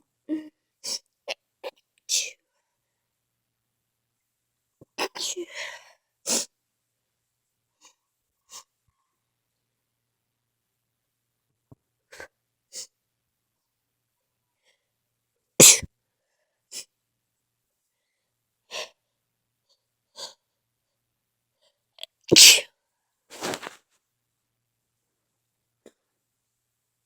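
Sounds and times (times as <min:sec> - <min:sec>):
person sneezing: 0:15.6 - 0:15.9, 0:22.3 - 0:22.7, 0:23.3 - 0:23.8
stifled sneezes: 0:15.6 - 0:15.9, 0:22.3 - 0:22.7, 0:23.3 - 0:23.8.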